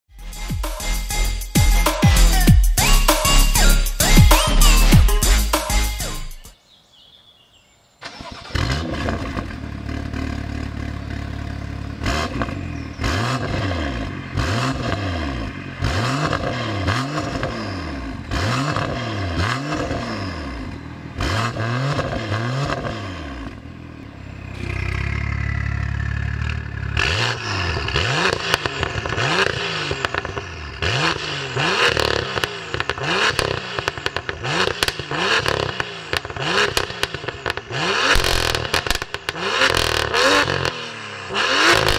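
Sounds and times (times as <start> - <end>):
exhaust crackles and pops: 8.0 - 20.1, 24.7 - 41.9
car engine revving in blips: 8.0 - 41.9.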